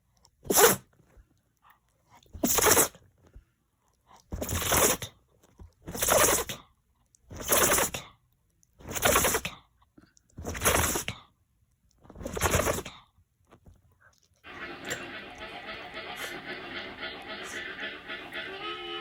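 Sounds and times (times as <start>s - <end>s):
dog sneezing: 0.4s - 0.9s, 2.4s - 3.0s, 5.9s - 6.6s, 7.4s - 8.0s, 8.9s - 9.5s, 10.4s - 11.1s.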